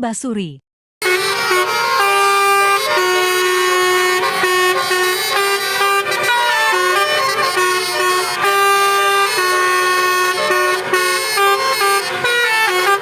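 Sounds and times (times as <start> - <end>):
musical air horns playing a tune: 1.0 - 13.0.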